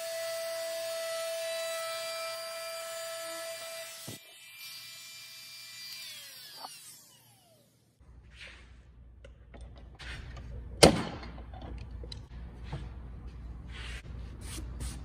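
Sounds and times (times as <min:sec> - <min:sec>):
handling and clatter: 0:09.2 - 0:13.0.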